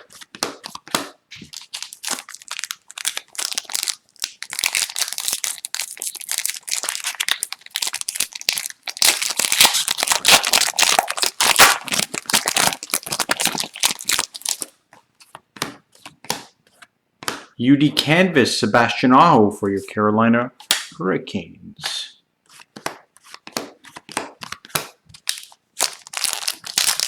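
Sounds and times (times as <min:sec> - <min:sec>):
cards being handled: 0:00.0 - 0:05.5, 0:21.8 - 0:27.0
foil wrapper crinkling and tearing: 0:01.4 - 0:14.7, 0:25.2 - 0:27.0.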